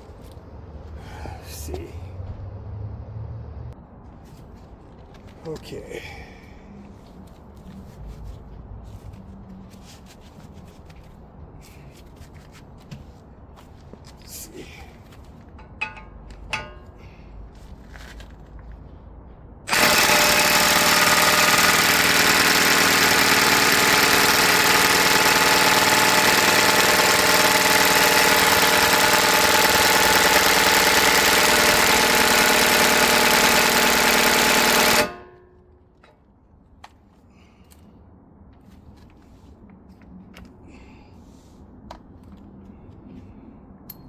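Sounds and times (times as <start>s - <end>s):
power tool running: 19.7s - 35.4s.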